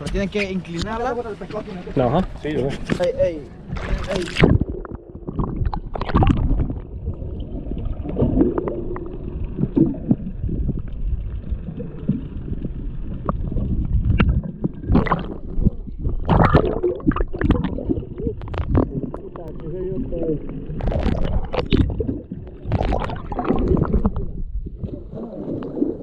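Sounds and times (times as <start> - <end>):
water sloshing against boat hull: 0.0 - 6.9
low uneven rumble: 0.0 - 26.0.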